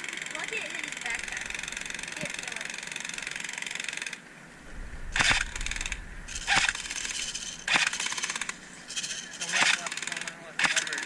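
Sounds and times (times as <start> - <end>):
airsoft gun full-auto bursts: 6.4 - 8.6.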